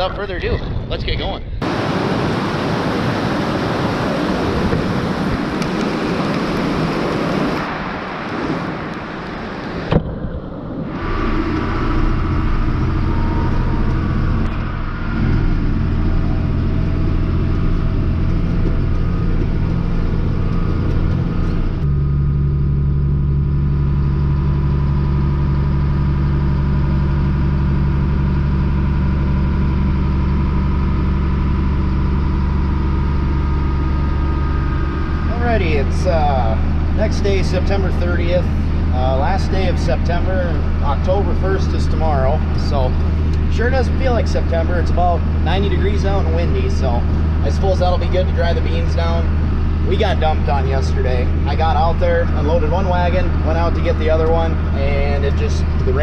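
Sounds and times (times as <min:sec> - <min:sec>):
wind rushing over microphone: 0:00.0 - 0:21.9
tractor engine running: 0:03.0 - 0:56.0
sharp thump: 0:09.8 - 0:10.3.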